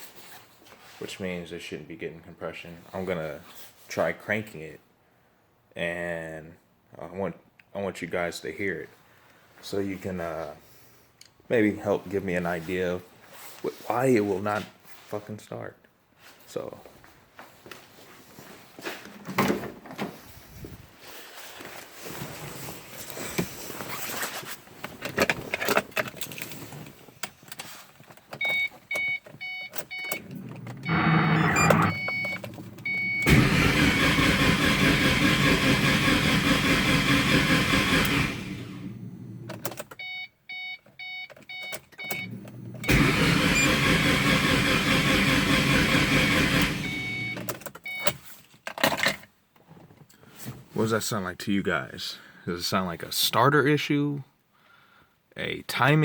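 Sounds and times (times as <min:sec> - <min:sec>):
car warning chime beeping: 0:28.4 - 0:33.5, 0:40.0 - 0:44.0, 0:46.3 - 0:48.1
starter motor cranking engine: 0:29.9 - 0:39.8, 0:42.2 - 0:47.6.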